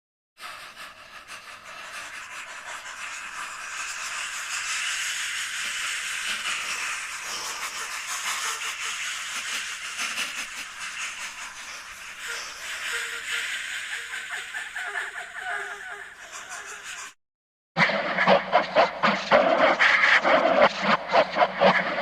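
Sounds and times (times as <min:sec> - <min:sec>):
steady hissing noise: 0:00.5 - 0:15.4.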